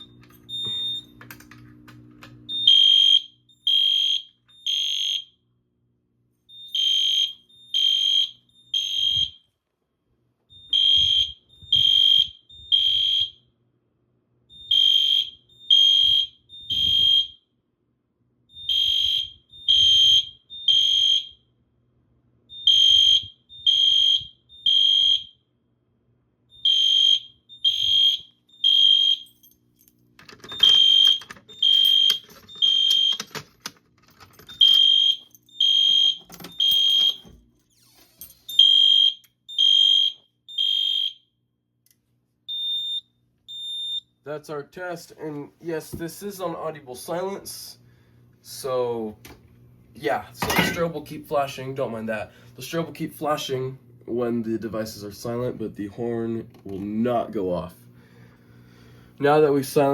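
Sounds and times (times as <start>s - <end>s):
fire alarm horn blasts: 2.5s - 5.5s, 6.5s - 9.6s, 10.5s - 13.5s, 14.5s - 17.5s, 18.5s - 21.5s, 22.5s - 25.5s, 26.5s - 29.3s, 30.5s - 33.3s, 34.5s - 37.3s, 38.5s - 41.4s, 42.5s - 44.3s.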